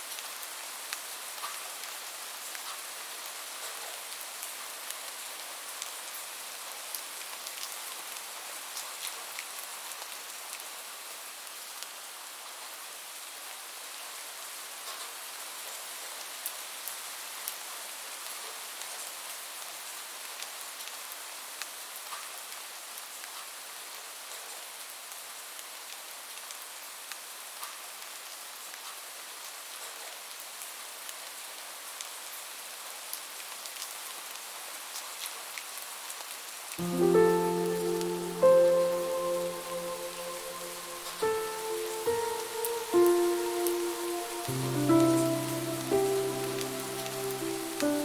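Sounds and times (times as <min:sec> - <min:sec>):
steady rain falling: 0:00.0 - 0:12.4, 0:36.5 - 0:48.0
raindrops ticking: 0:36.8 - 0:48.0.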